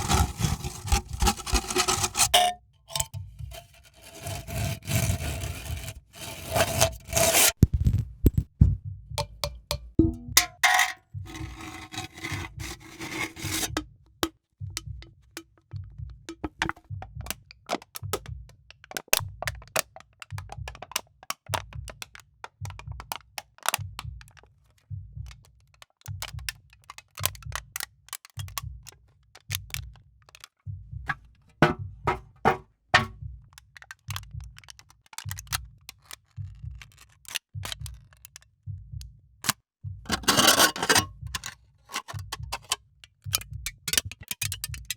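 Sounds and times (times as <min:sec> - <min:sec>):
drink can clicks and scrapes: 0:00.0 - 0:08.4, 0:10.4 - 0:13.8, 0:39.4 - 0:44.9.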